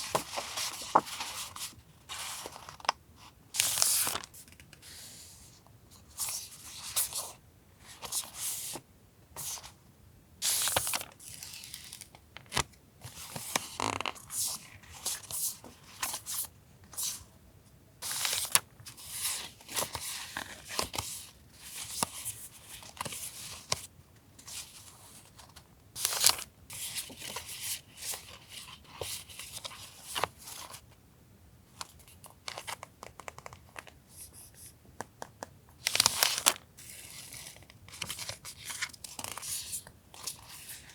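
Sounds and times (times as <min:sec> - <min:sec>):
paper rustling and crinkling: 0:00.0 - 0:03.0, 0:03.6 - 0:05.0, 0:10.4 - 0:17.2, 0:35.8 - 0:40.9.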